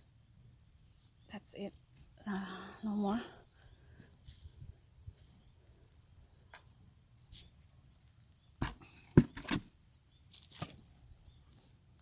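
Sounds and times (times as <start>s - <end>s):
crickets trilling: 0.0s - 12.0s
short knocks: 8.6s - 9.7s.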